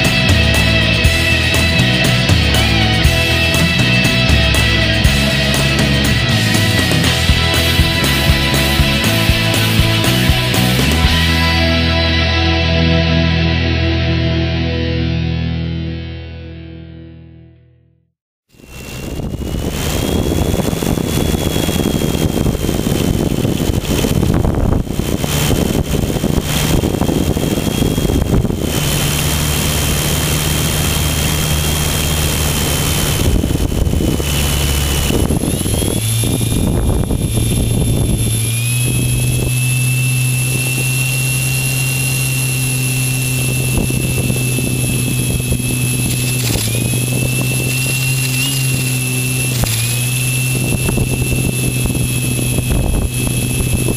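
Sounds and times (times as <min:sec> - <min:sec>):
electric motor whine: 0:00.0 - 0:12.2, 0:18.5 - 0:53.9
propeller buzz: 0:00.0 - 0:16.2, 0:18.5 - 0:53.9
wind rushing: 0:18.7 - 0:29.7, 0:32.9 - 0:41.4, 0:42.7 - 0:53.9.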